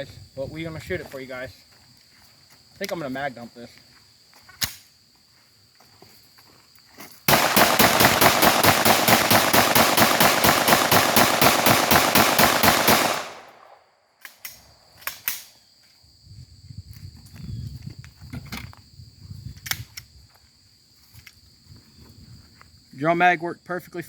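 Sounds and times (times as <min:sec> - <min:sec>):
rapid pistol gunshots: 0:07.3 - 0:13.8.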